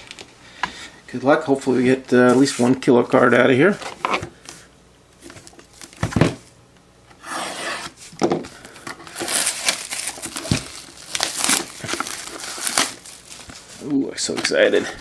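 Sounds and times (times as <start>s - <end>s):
plastic wrap crinkling and tearing: 9.0s - 14.8s.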